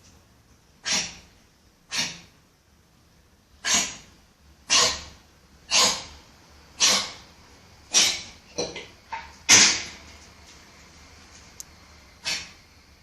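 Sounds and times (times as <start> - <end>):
dog coughing: 0.8 - 2.3, 3.6 - 6.2, 6.8 - 7.3, 7.9 - 8.7, 9.5 - 9.9, 12.2 - 12.6.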